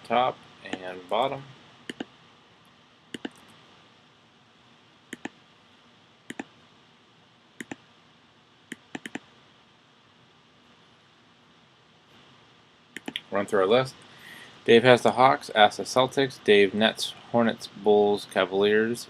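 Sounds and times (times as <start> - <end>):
computer mouse clicking: 1.9 - 2.1, 3.1 - 3.6, 5.1 - 5.4, 6.3 - 6.5, 7.6 - 7.8, 8.7 - 9.3, 13.0 - 13.3.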